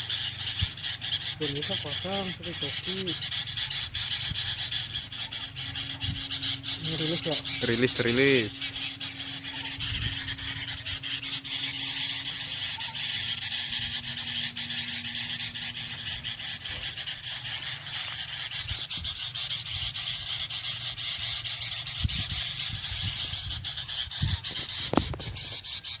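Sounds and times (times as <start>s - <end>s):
low steady hum: 0.0s - 19.9s
high chirping animals chorus: 0.0s - 26.0s.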